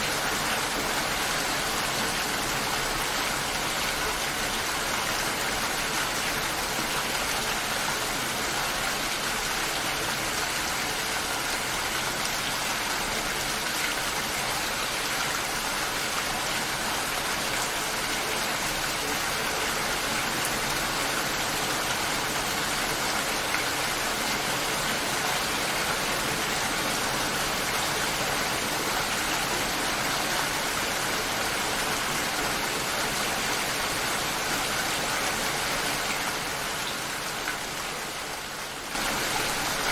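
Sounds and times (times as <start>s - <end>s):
steady rain falling: 0.0s - 39.9s.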